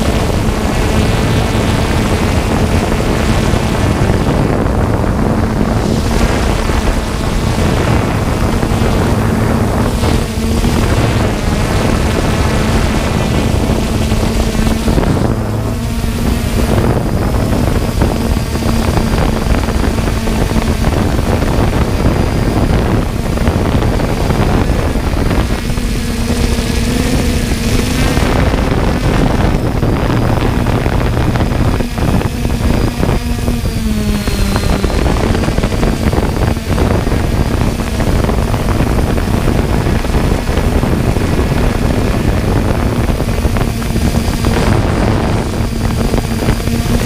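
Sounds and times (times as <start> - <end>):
drone motors humming: 0.0 - 47.0
wind noise on microphone: 0.0 - 47.0.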